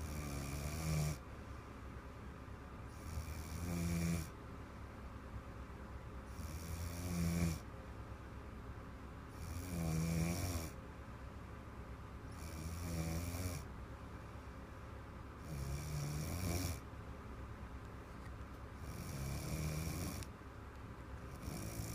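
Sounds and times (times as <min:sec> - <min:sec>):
girl snoring: 0:00.0 - 0:01.2, 0:03.0 - 0:04.3, 0:06.4 - 0:07.6, 0:09.4 - 0:10.8, 0:12.4 - 0:13.7, 0:15.4 - 0:16.8, 0:18.8 - 0:20.3, 0:21.4 - 0:21.9
quiet breathing: 0:00.0 - 0:02.0.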